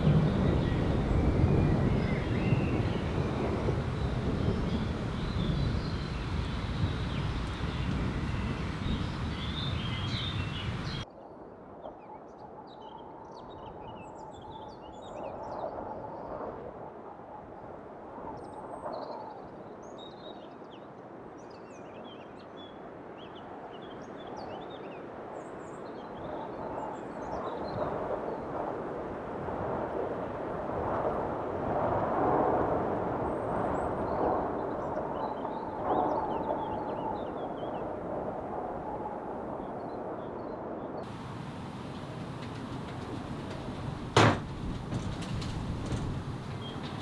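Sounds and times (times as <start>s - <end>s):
loud steady rushing noise: 0.0s - 11.0s, 41.1s - 47.0s
small birds chirping: 0.0s - 11.0s, 41.0s - 47.0s.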